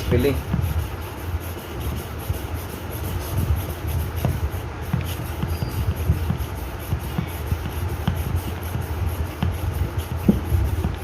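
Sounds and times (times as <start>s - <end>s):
hand air pump strokes: 0.0s - 11.0s
steady low hum: 0.0s - 11.0s.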